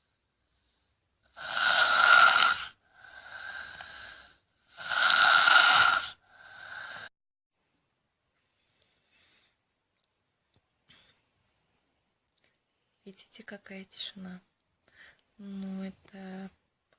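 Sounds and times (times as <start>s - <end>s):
child snoring: 1.3s - 7.1s.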